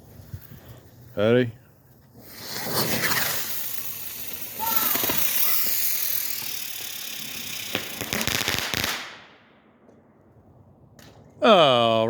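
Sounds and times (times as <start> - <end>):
firework crackles and pops: 2.0 - 9.7
firework hissing and whistling: 2.1 - 9.4.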